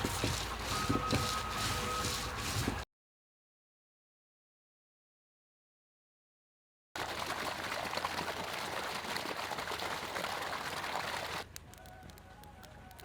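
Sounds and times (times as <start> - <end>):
water pouring: 7.0 - 11.4.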